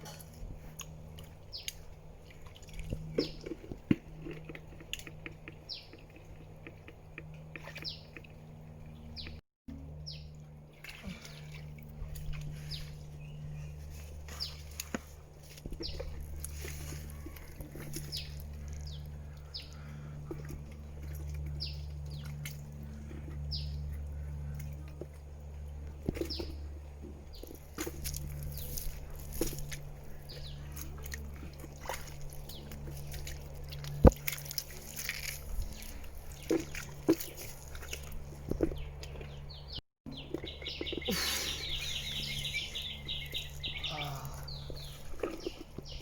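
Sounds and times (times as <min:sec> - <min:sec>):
steady low hum: 0:00.0 - 0:46.0
bird chirping: 0:38.6 - 0:46.0.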